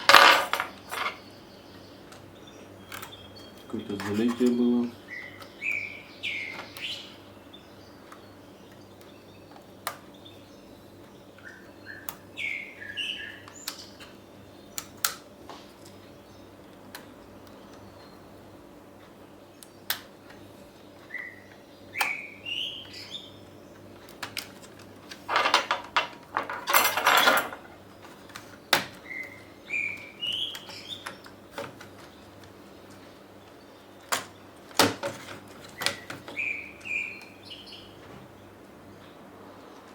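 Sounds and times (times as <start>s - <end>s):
small bird chirping: 0.7s - 15.1s, 19.2s - 24.0s, 27.8s - 34.6s, 35.6s - 39.9s.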